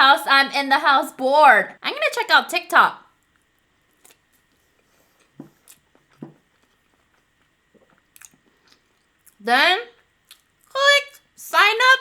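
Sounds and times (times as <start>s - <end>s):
faint chewing mouth sounds: 3.2s - 9.4s, 10.0s - 11.3s.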